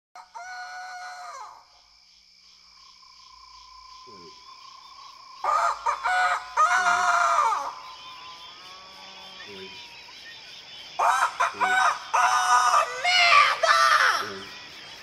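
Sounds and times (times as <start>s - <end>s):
rooster crowing: 0.2s - 1.8s, 5.4s - 10.0s, 11.0s - 14.4s.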